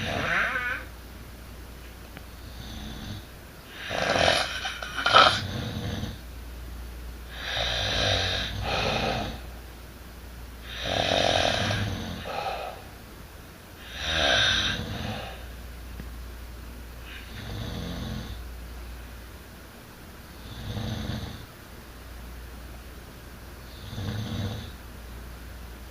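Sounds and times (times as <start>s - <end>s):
person snoring: 0.0s - 0.9s, 2.4s - 6.2s, 7.3s - 9.5s, 10.6s - 12.9s, 13.8s - 15.5s, 23.7s - 24.8s.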